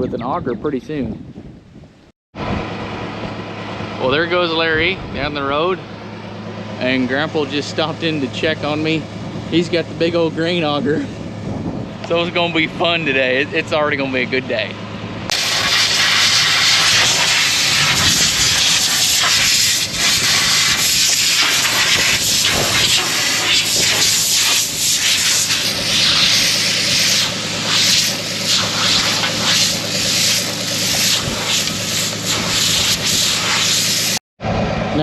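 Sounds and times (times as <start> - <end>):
engine hum: 1.6 - 35.0
compressed air hissing: 15.3 - 34.2.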